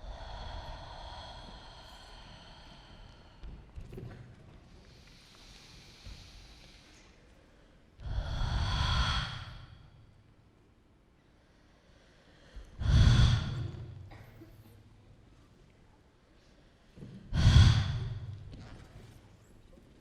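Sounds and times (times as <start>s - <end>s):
loud human breaths: 0.0s - 3.9s, 4.8s - 10.2s, 11.4s - 14.2s, 16.4s - 18.5s.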